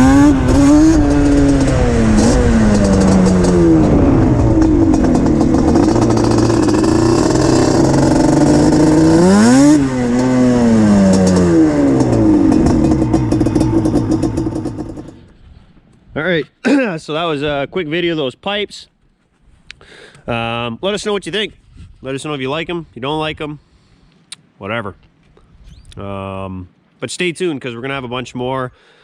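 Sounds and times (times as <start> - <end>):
two-stroke engine revving hard: 0.0 - 15.2.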